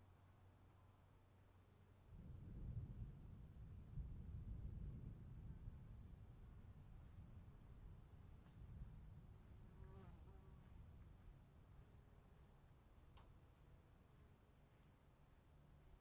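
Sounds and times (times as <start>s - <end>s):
low storm rumble: 2.0s - 9.8s.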